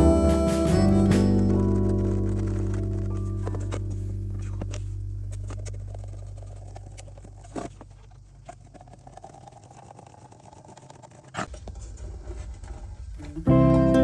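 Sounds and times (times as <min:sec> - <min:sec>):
background music: 0:00.0 - 0:04.8, 0:13.5 - 0:14.0.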